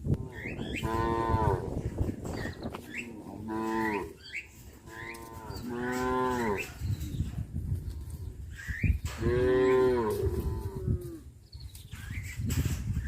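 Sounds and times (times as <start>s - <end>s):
cows mooing: 0.0s - 1.8s, 2.9s - 4.2s, 4.8s - 6.8s, 9.1s - 11.3s.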